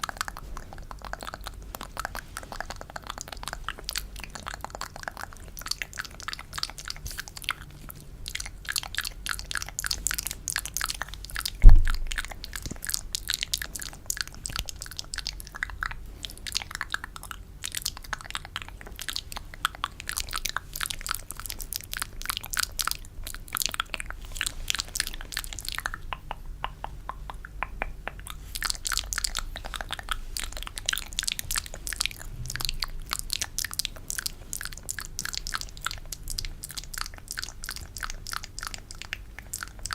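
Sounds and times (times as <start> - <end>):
wet sticky mouth clicks: 0.0 - 39.9
low thump: 11.6 - 12.2.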